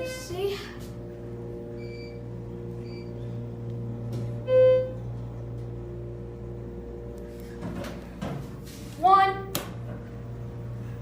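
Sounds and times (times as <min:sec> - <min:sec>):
elevator arrival chime: 0:00.0 - 0:06.7
elevator low hum: 0:00.0 - 0:11.0.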